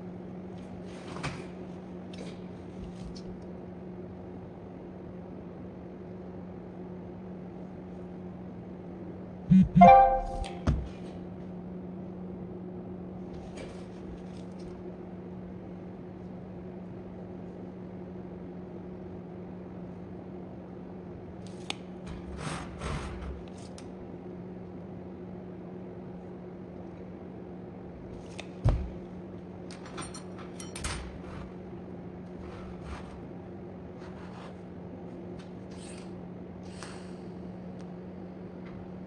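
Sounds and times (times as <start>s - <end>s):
steady hum: 9.5s - 11.0s.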